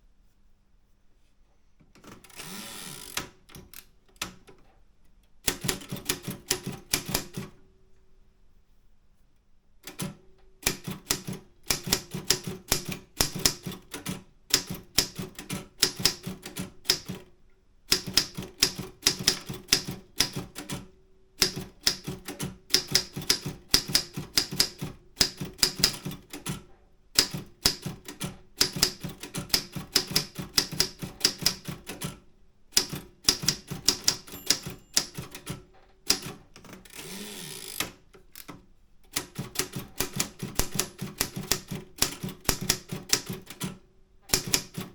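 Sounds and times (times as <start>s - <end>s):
typewriter keystrokes: 5.5s - 7.5s, 9.8s - 17.3s, 17.9s - 37.0s, 37.7s - 44.9s.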